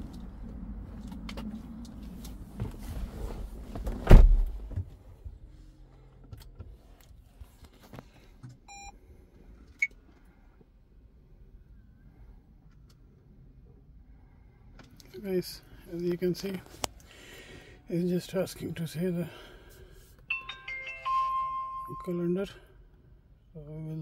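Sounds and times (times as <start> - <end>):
car door shutting: 3.7 - 4.8
rustling and handling noise: 6.7 - 8.4.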